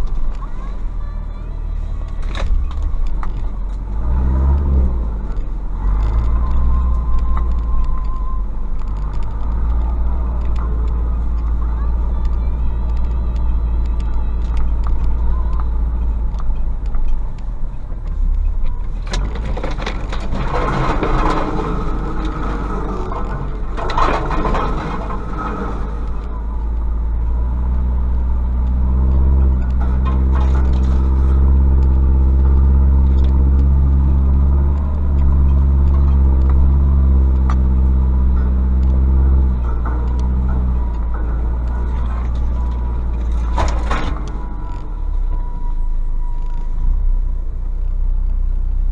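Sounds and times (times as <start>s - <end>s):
truck diesel engine running: 0.0s - 48.9s.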